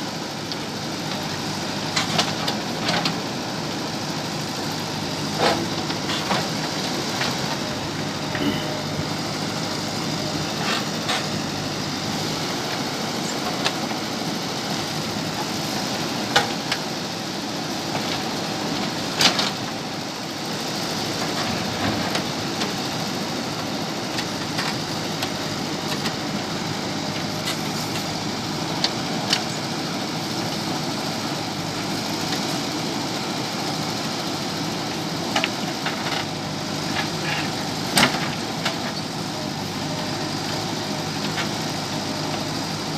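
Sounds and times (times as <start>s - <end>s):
diesel engine running: 0.0s - 42.9s.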